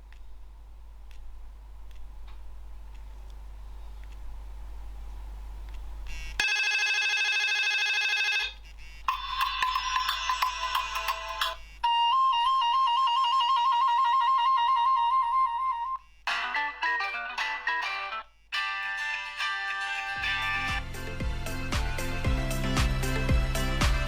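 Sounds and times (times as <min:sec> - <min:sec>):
electronic ringtone melodies: 0:06.4 - 0:20.8.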